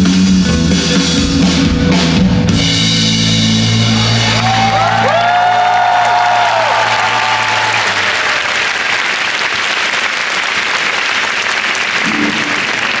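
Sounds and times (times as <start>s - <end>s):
audience applauding: 3.8s - 13.0s.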